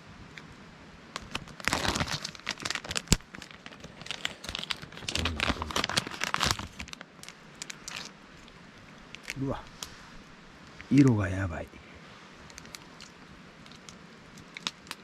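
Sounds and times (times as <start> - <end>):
plastic pouch crinkling: 1.2 - 8.1.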